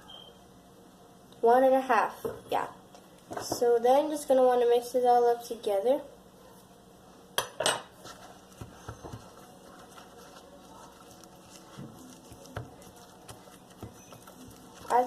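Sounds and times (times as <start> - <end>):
utensil knocking and scraping bowl: 7.4 - 15.0.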